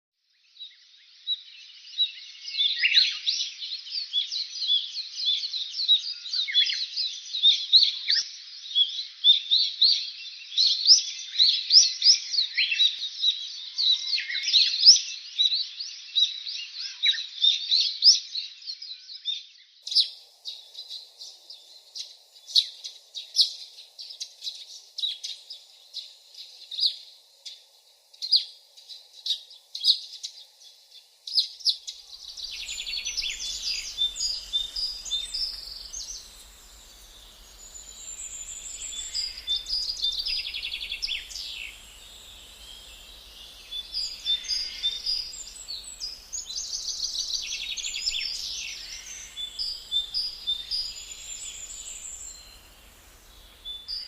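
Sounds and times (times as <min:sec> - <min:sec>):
small birds chirping: 0:19.9 - 0:54.0.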